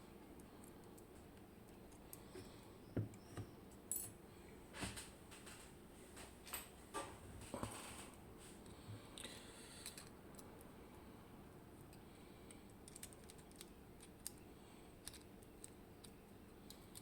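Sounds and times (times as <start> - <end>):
small metal clicks: 12.5 - 14.4, 15.0 - 17.0.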